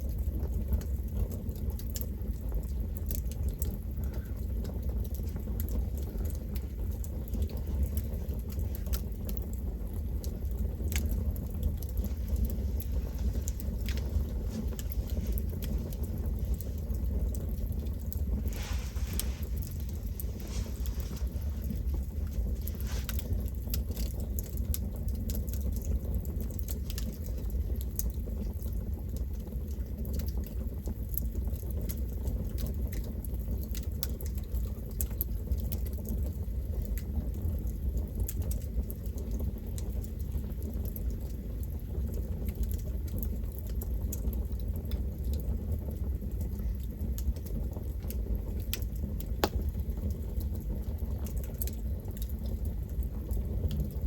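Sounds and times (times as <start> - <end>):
fire popping: 0.0 - 54.0
low rumble of flames: 0.0 - 54.0
wood crackling: 1.8 - 31.2, 48.5 - 52.5.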